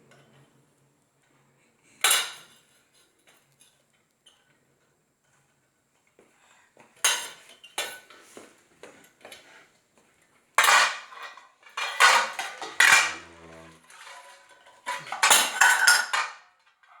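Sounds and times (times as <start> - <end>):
dishes and cutlery clattering: 10.6 - 17.0.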